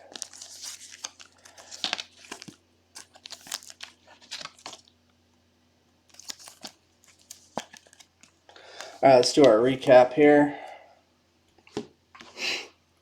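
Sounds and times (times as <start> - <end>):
plastic crinkling and rustling: 0.0 - 5.0, 6.1 - 9.5.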